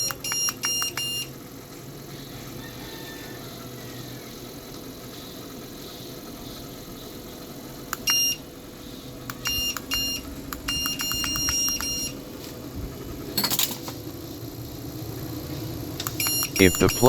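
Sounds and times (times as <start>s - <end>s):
treadmill short high beeps: 0.0s - 1.3s, 8.0s - 8.4s, 9.4s - 12.2s, 16.2s - 17.0s
treadmill motor humming: 0.0s - 13.4s, 14.1s - 17.0s.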